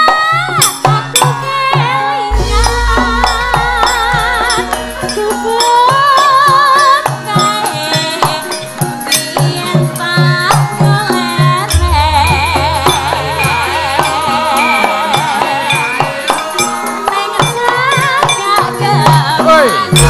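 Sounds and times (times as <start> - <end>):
person singing: 1.2 - 8.6, 9.2 - 20.0
deep low gong-like note: 2.3 - 5.6, 11.7 - 14.2
metallophone notes: 2.3 - 7.5, 11.4 - 17.7
hand drum strokes: 2.3 - 8.4, 9.2 - 20.0.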